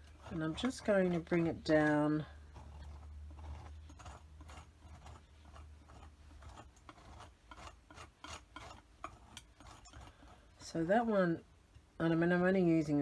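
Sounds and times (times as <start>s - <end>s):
light ticks and rubbing of paint: 0.0s - 11.9s
low steady hum: 0.0s - 13.0s.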